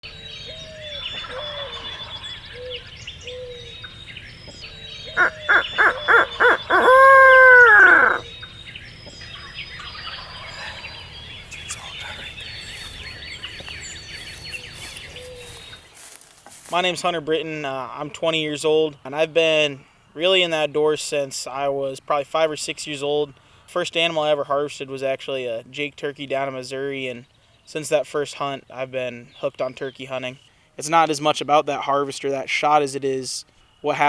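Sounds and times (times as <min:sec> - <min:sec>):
songbirds chirping: 0:00.0 - 0:34.0
loud hooting bird call: 0:05.1 - 0:08.4.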